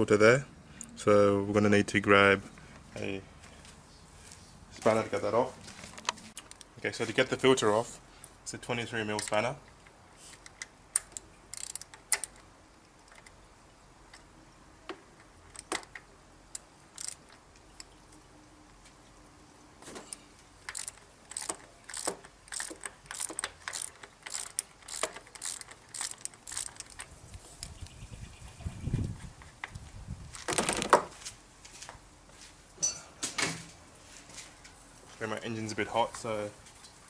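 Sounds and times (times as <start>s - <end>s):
socket ratchet clicking: 10.4s - 12.4s, 17.0s - 17.2s, 20.7s - 27.1s.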